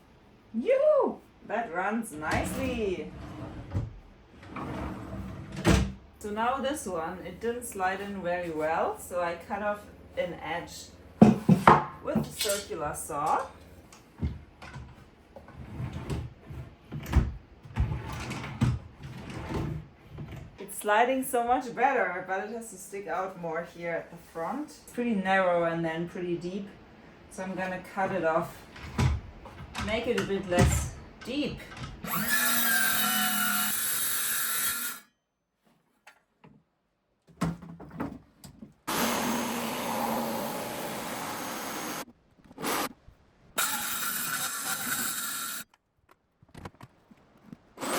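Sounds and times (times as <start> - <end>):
wooden drawer sliding: 2.4 - 5.9
power saw cutting wood: 32.1 - 35.0, 43.6 - 45.6.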